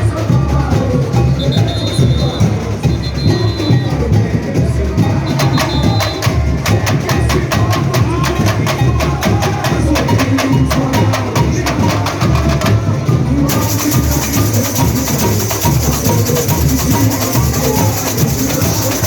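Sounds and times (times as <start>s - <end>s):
deep bass drumming: 0.0s - 19.0s.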